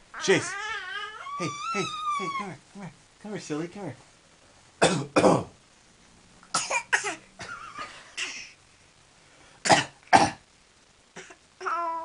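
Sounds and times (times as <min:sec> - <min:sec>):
person coughing: 0:04.8 - 0:05.5.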